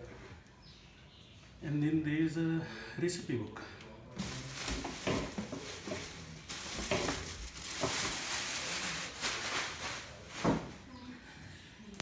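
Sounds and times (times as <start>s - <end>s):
packaging rustling and crinkling: 4.2s - 10.8s.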